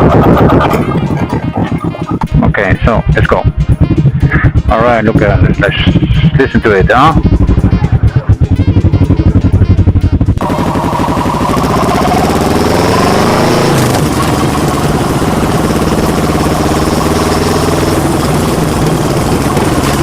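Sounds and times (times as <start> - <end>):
motorcycle engine revving: 0.0 - 20.0.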